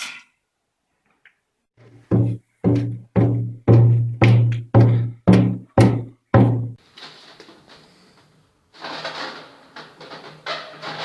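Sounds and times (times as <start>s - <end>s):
scraping rustling noise: 6.8s - 11.0s.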